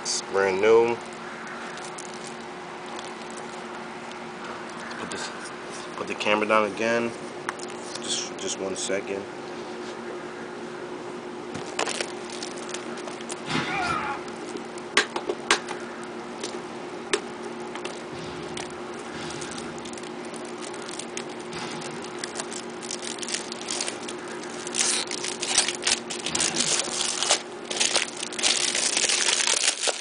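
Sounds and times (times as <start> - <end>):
plastic wrapping crinkling: 0.6 - 5.0, 11.6 - 15.0, 17.4 - 30.0.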